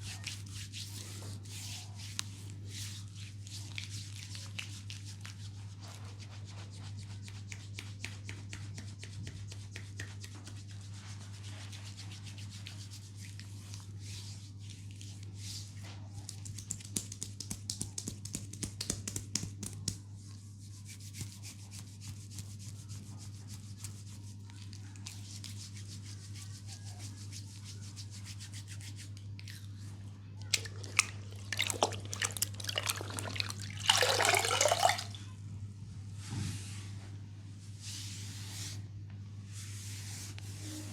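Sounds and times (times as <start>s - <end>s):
scratchy rubbing on skin: 0.0s - 29.9s.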